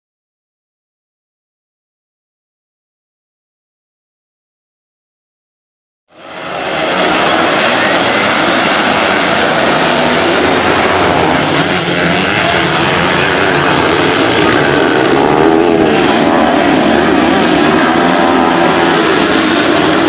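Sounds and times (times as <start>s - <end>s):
racing engine at high revs: 6.1s - 20.0s.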